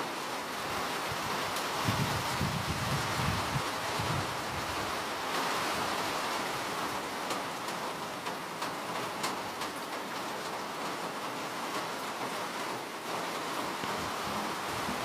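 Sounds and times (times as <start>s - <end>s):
raindrops ticking on a surface: 0.0s - 15.0s
steady rainfall hiss: 0.0s - 15.0s.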